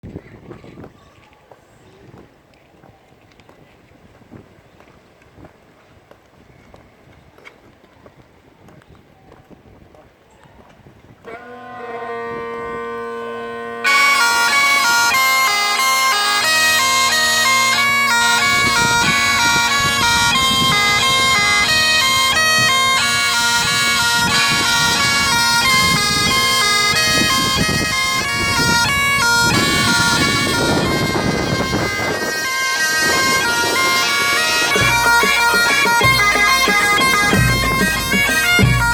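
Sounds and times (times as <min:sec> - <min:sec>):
bagpipe drones: 0:11.3 - 0:38.9
bagpipe melody: 0:11.3 - 0:38.9
band drums: 0:34.4 - 0:38.9.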